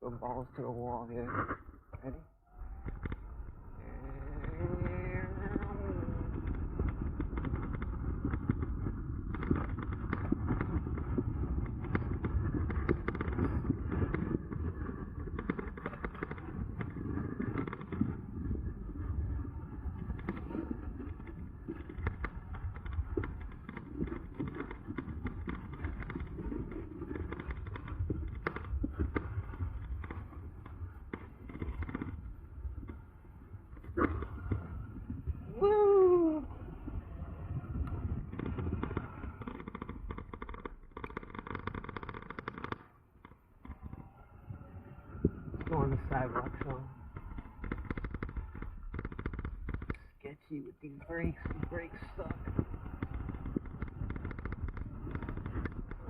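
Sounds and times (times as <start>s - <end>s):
road rumble: 2.6s - 26.4s
wind buffeting microphone: 2.7s - 40.4s, 43.6s - 50.0s, 51.0s - 56.0s.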